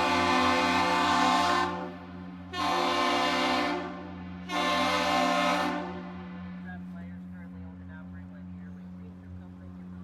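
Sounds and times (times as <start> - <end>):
loud air horn blast: 0.0 - 1.9, 2.5 - 6.1
low steady horn tone: 0.0 - 1.9, 2.5 - 6.1.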